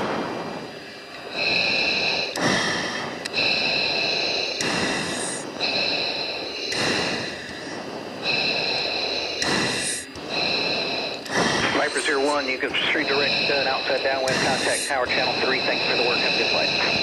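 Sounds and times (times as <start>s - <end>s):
heavy breathing into a microphone: 0.0s - 17.0s
high-pitched cockpit tones: 9.7s - 17.0s.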